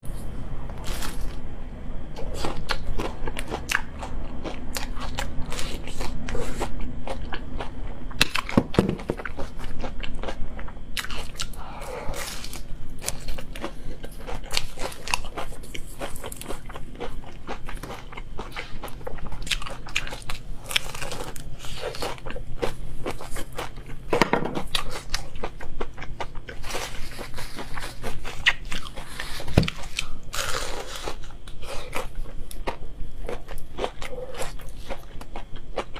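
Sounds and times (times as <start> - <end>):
fried chicken crunching: 11.0 - 35.9.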